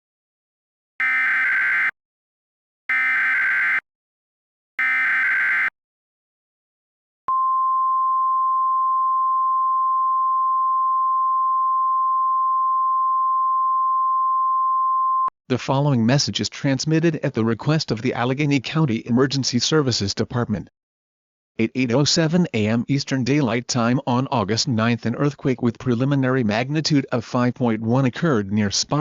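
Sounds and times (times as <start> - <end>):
buzzing digital data tones: 2.9 - 3.8, 4.8 - 5.7.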